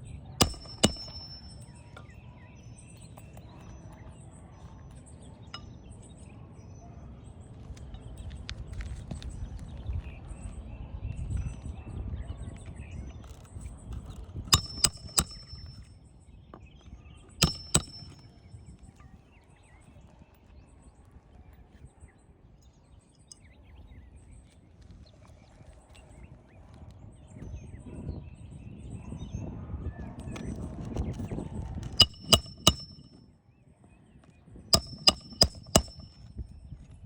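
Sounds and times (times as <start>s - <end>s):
hammer striking nails: 0.4s - 1.7s, 14.5s - 15.9s, 17.4s - 18.3s, 32.0s - 33.2s, 34.8s - 36.3s.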